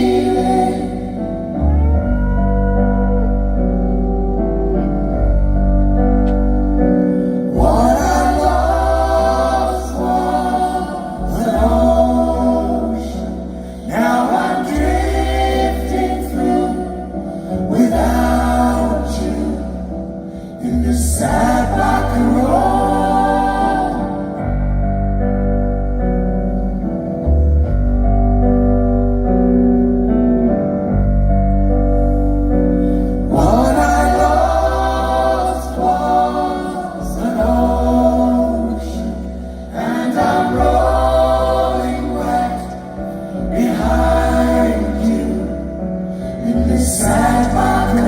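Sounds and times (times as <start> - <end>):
voices singing in harmony: 0.0 - 4.0, 7.2 - 24.7, 32.8 - 48.0
keyboard chords: 0.0 - 48.0
low bass notes: 0.0 - 48.0.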